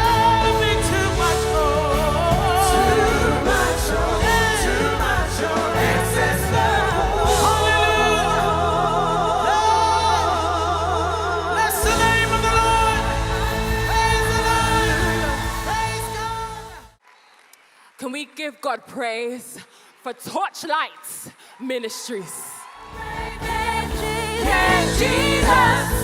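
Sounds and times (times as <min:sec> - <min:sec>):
bass and keyboard accompaniment: 0:00.0 - 0:17.0, 0:22.9 - 0:26.0
choir singing: 0:00.0 - 0:17.0, 0:22.8 - 0:26.0.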